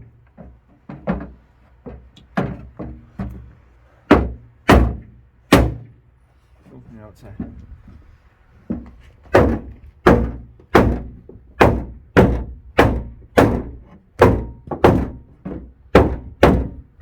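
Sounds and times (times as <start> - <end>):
hammer striking wood block: 9.3 - 16.8.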